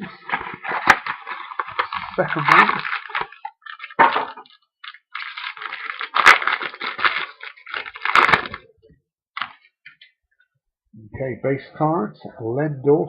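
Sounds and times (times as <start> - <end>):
plastic wrapping crinkling: 0.0 - 8.7, 9.4 - 10.2.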